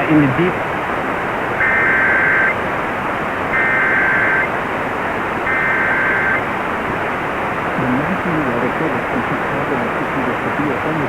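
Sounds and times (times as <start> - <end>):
radio hiss: 0.0 - 0.7, 1.4 - 7.1, 7.8 - 11.0
two-tone digital warble bursts: 1.6 - 2.6, 3.5 - 4.5, 5.5 - 6.4.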